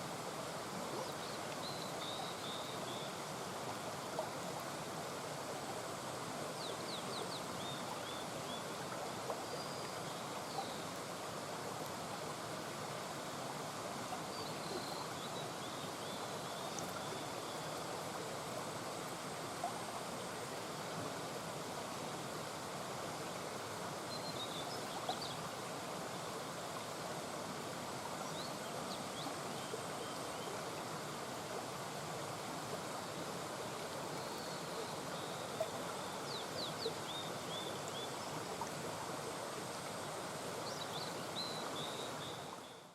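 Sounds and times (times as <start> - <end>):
brook babbling over stones: 0.0 - 42.9.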